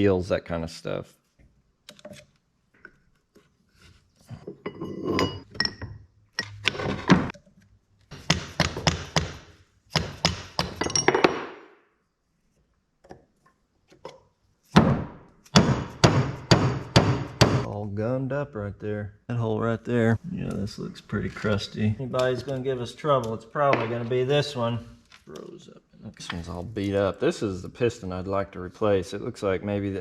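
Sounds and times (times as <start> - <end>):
metal tools clinking together: 4.6 - 6.6, 10.8 - 11.3.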